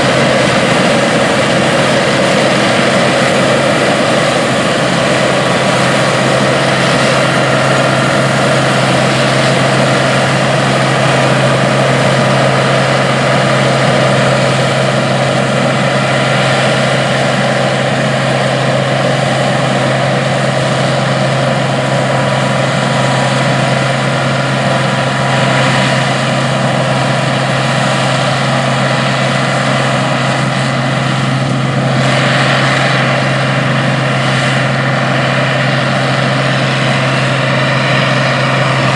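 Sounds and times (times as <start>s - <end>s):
combine harvester droning: 0.0s - 38.9s.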